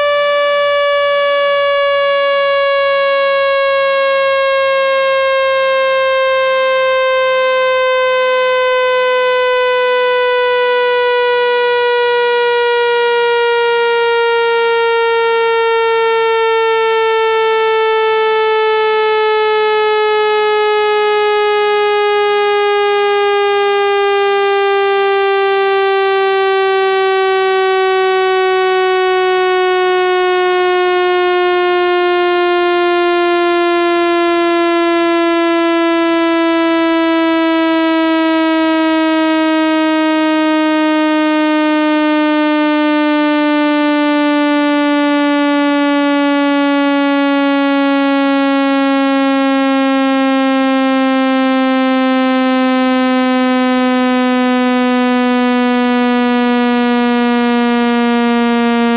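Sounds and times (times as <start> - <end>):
electronic buzzing tone gliding down: 0.0 - 58.9.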